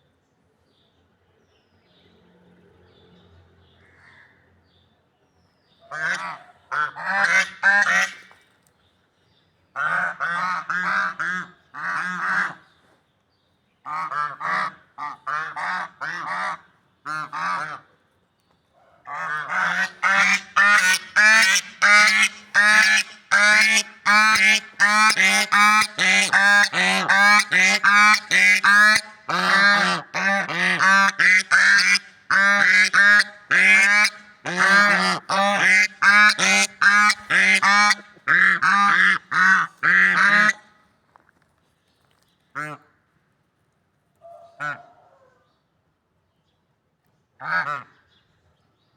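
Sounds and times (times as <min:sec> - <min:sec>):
swans honking: 0:19.1 - 0:40.7.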